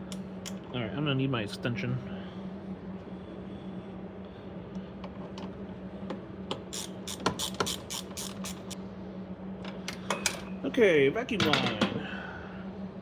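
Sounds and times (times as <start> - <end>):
steady low hum: 0.0 - 13.0
ratchet wrench clicking: 6.5 - 8.8.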